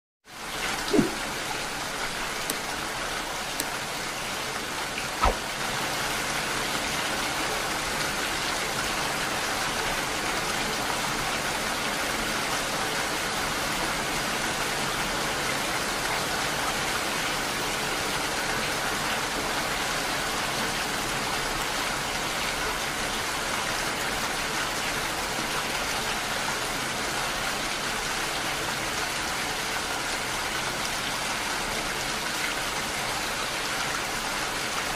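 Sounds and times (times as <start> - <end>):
steady rain: 0.3 - 34.9
knocks or drips: 0.9 - 1.2, 5.2 - 5.4.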